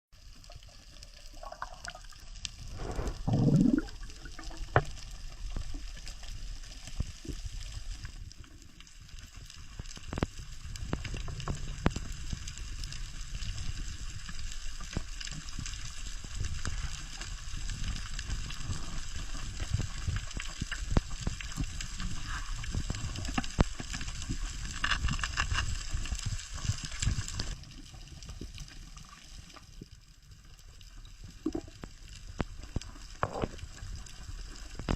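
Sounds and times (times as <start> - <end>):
underwater gurgling and bubbling: 0.2 - 29.8, 30.8 - 34.9
short rush of water: 2.6 - 4.6.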